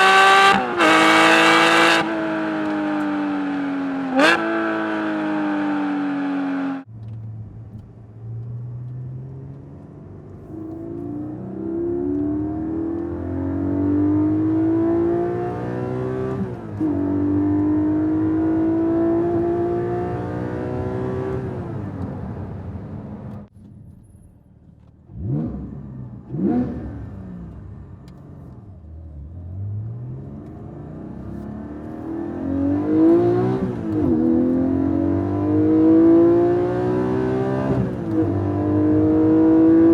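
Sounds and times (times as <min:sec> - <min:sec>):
car engine accelerating hard: 0:00.0 - 0:23.5, 0:24.7 - 0:39.9.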